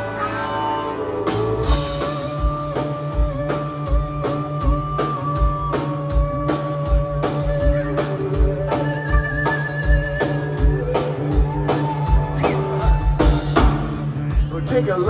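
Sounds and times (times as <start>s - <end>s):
electric guitar long bending notes: 0.0s - 14.8s
bass guitar: 0.0s - 15.0s
steady drum beat: 1.0s - 15.0s.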